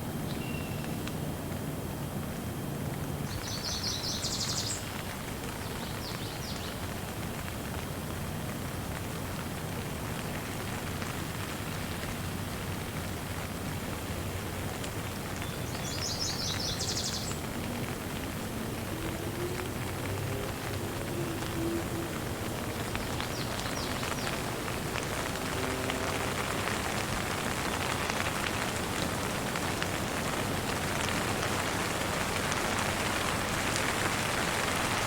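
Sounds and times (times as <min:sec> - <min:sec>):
steady rain falling: 0:00.0 - 0:35.0
bird chirping: 0:00.3 - 0:01.0, 0:03.3 - 0:04.9, 0:15.4 - 0:17.4.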